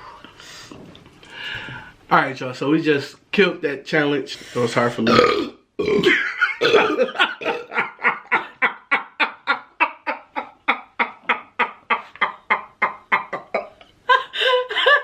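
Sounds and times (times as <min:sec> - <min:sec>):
person laughing hard: 0:06.0 - 0:15.0.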